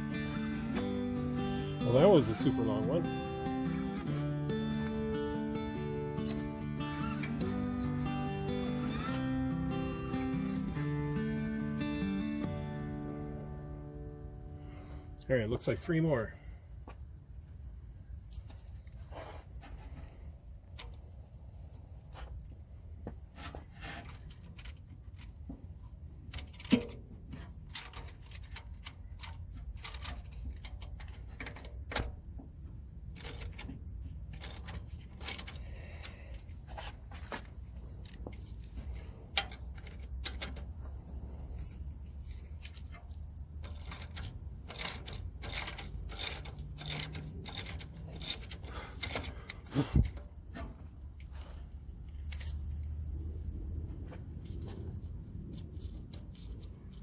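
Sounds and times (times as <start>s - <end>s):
wrench and ratchet clicking: 42.6s - 50.2s.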